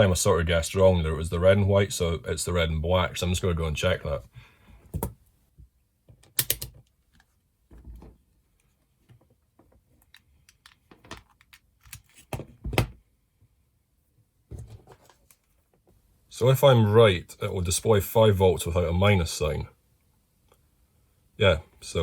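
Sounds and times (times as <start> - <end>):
multimeter probes clicking and knocking: 6.1 - 7.3.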